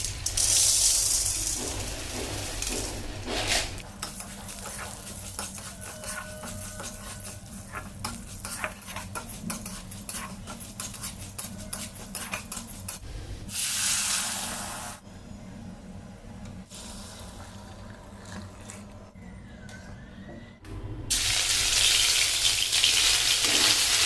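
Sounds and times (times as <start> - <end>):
food sizzling: 0.0 - 15.0, 21.1 - 24.0
metal utensil scraping a pan: 3.4 - 13.0.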